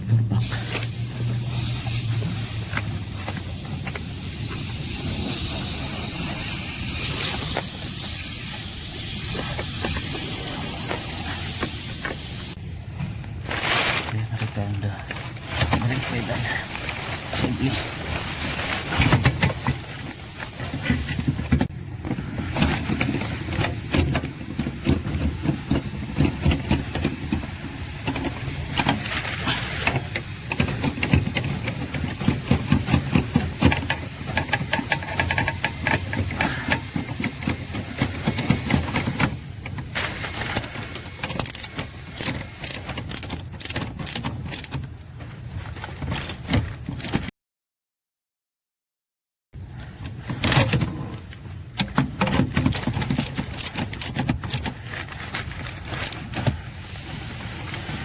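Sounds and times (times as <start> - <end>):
tools and metal parts clattering: 13.5 - 45.0, 45.6 - 47.3, 50.0 - 56.6.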